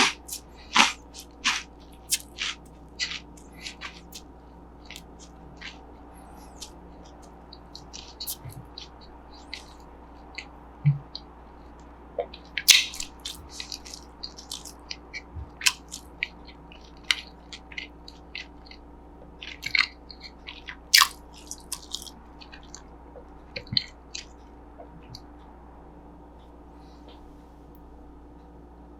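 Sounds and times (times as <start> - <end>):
crunchy snack being chewed: 0.0 - 10.6, 12.2 - 22.9, 23.6 - 24.4.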